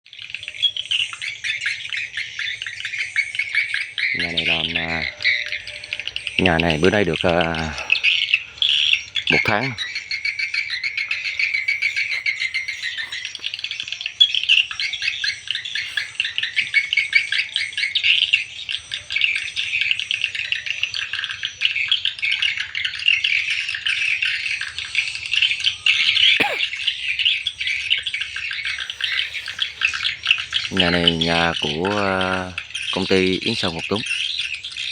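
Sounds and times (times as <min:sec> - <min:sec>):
swiftlets twittering: 0:00.5 - 0:19.0, 0:25.9 - 0:34.0.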